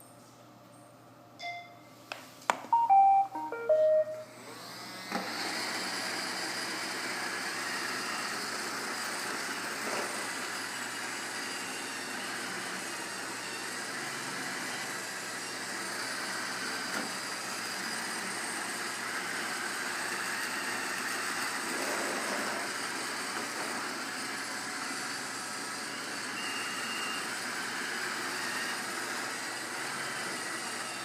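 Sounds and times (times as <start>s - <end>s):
robot vacuum beeping tune: 2.7s - 4.7s
vacuum motor and brushes running: 4.2s - 31.0s.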